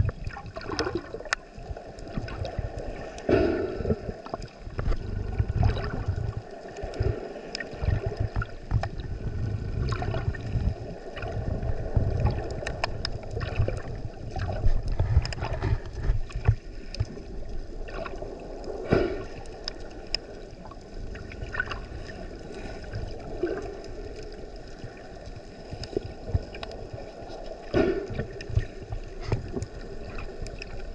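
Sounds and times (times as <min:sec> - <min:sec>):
water sloshing and gurgling: 0:00.0 - 0:30.9
low rumble: 0:01.6 - 0:16.6.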